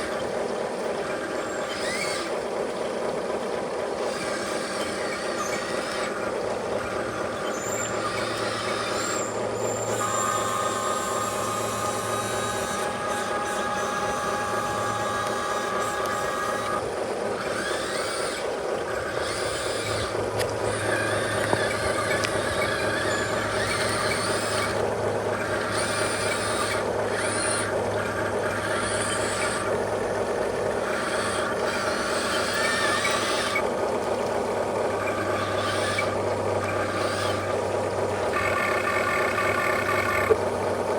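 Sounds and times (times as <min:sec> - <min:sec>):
model truck engine running: 0:00.0 - 0:40.9.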